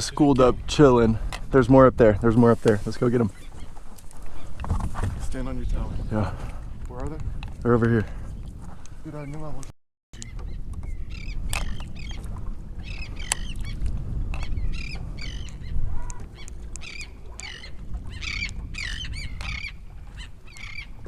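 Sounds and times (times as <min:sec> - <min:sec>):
wind rumble on microphone: 0:00.0 - 0:21.0
birds calling high wavering notes: 0:14.4 - 0:21.0.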